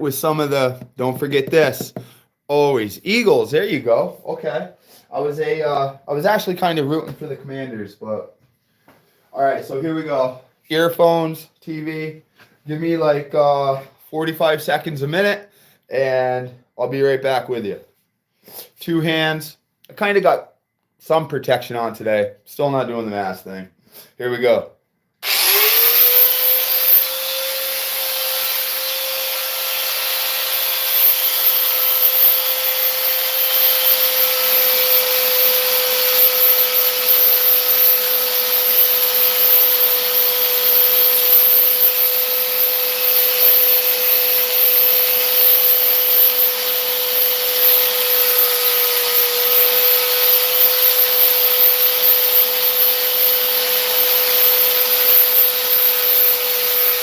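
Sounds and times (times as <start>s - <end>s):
electric sander whining: 25.2s - 57.0s.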